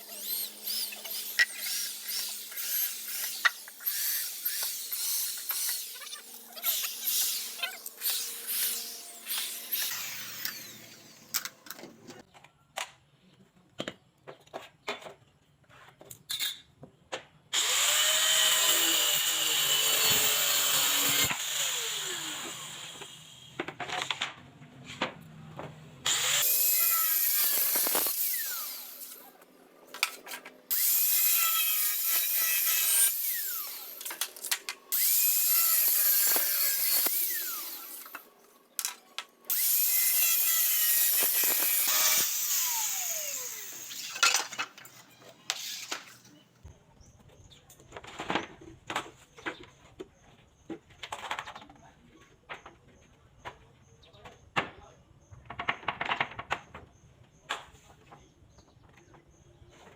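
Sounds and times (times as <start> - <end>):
power drill running: 0.0 - 12.2, 17.6 - 23.4, 26.1 - 29.4, 30.0 - 46.3.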